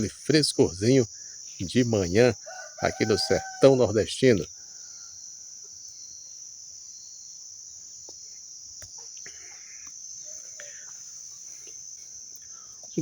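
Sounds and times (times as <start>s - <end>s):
insects shrilling drone: 0.0s - 13.0s
faint chirps and clicks: 5.6s - 6.2s, 8.0s - 13.0s.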